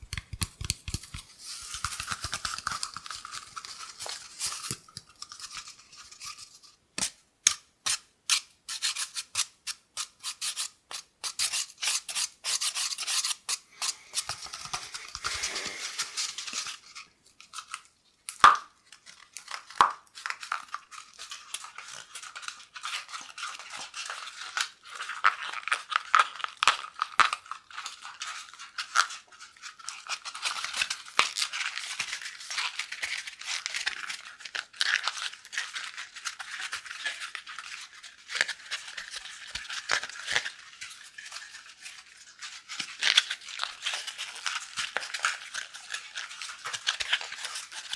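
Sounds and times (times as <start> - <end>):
scratching and rubbing on cardboard: 8.7 - 17.0.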